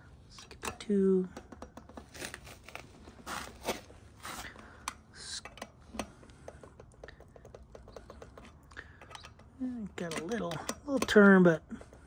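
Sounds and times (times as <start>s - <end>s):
torque wrench metal clicks and knocks: 0.3s - 2.1s, 4.8s - 12.0s.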